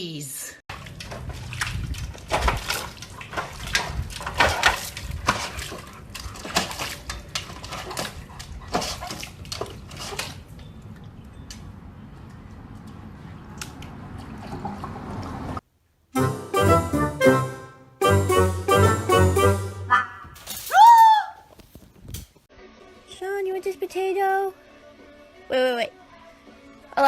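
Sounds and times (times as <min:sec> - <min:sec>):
music: 0:16.1 - 0:20.0, 0:22.5 - 0:27.0.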